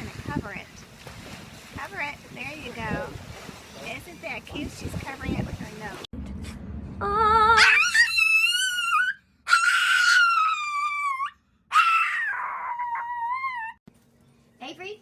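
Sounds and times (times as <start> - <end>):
dog howling: 7.0 - 13.8.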